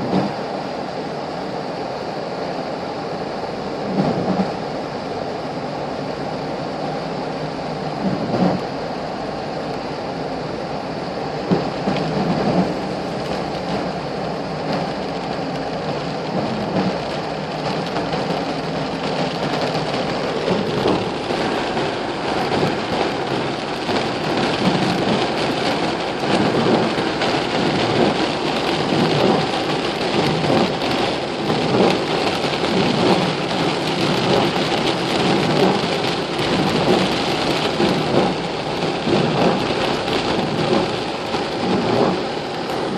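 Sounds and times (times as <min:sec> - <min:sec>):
steady rain falling: 0:00.0 - 0:42.9
raindrops ticking: 0:11.5 - 0:42.9.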